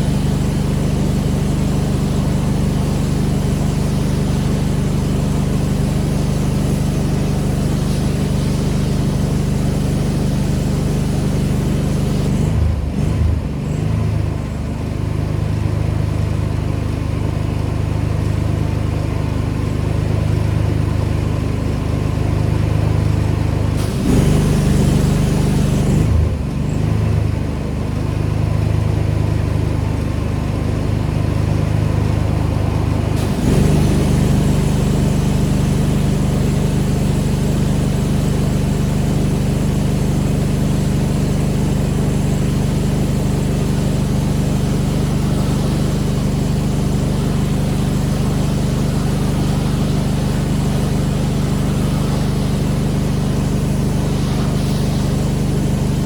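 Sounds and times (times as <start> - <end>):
pressure washer engine running: 0.0 - 56.0
brief hiss: 42.4 - 56.0.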